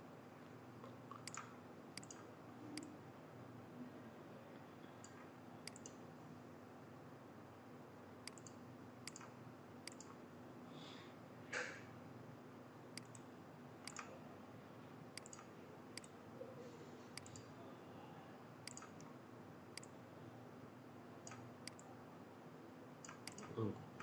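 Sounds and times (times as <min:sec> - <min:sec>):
low steady room hum: 0:00.0 - 0:24.0
computer mouse clicks: 0:00.8 - 0:03.0, 0:05.0 - 0:06.0, 0:08.2 - 0:10.2, 0:13.0 - 0:14.2, 0:15.2 - 0:16.2, 0:17.1 - 0:17.6, 0:18.6 - 0:19.2, 0:19.8 - 0:20.0, 0:21.2 - 0:21.9, 0:23.0 - 0:24.0.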